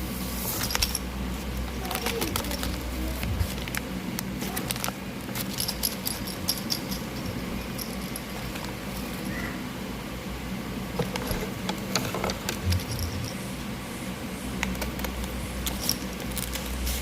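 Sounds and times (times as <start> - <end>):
steady low hum: 0.0 - 17.0
hands handling packaging: 0.5 - 9.4, 14.6 - 17.0.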